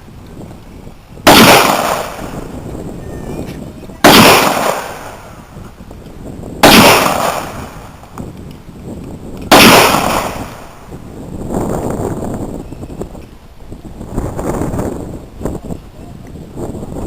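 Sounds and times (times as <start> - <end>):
gunshots with rumbling echo: 1.2 - 2.7, 4.0 - 5.6, 6.5 - 8.2, 9.4 - 11.9.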